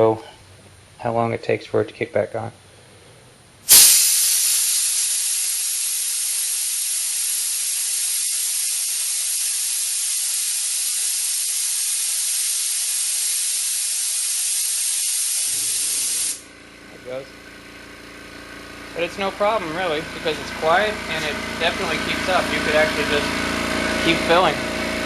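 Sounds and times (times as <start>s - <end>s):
compressed air hissing: 3.7s - 16.5s, 18.7s - 24.4s.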